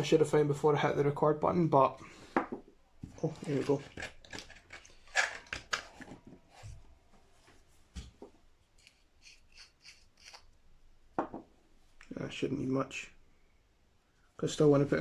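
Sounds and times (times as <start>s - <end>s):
short scratchy strokes: 8.8s - 10.5s.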